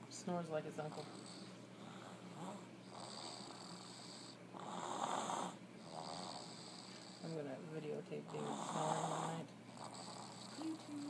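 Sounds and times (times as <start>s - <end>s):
person snoring: 8.3s - 11.0s.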